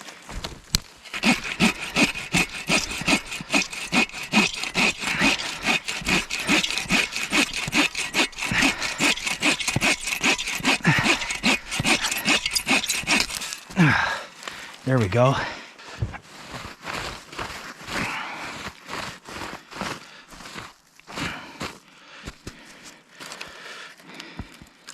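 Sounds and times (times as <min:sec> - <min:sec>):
hand saw cutting wood: 0:00.8 - 0:14.2.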